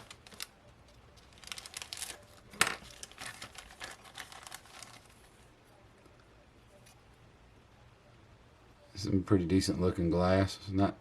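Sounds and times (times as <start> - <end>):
plastic bag crinkling: 0.0 - 5.5.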